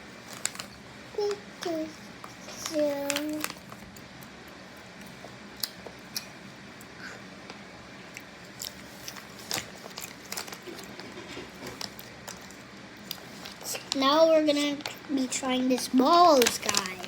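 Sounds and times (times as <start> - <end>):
child chewing crunchy snack: 8.1 - 14.0.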